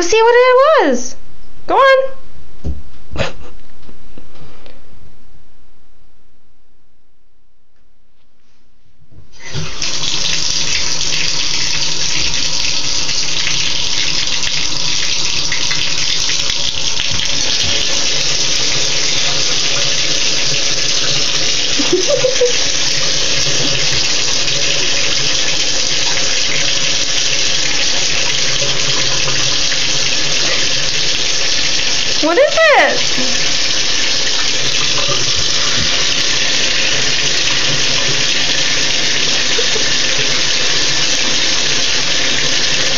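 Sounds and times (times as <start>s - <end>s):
water running into a tub: 9.4s - 42.9s.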